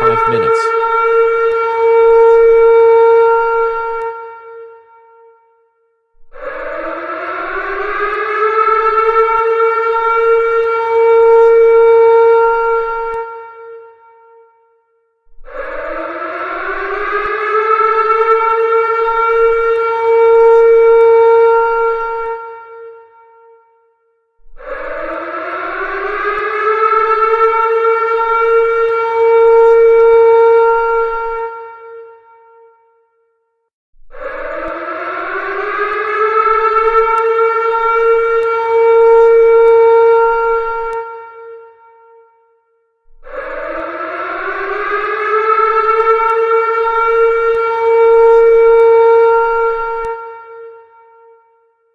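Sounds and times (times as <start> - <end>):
civil defense siren wailing: 6.4 - 14.0, 15.5 - 23.2, 24.6 - 32.7, 34.1 - 42.3, 43.2 - 51.6.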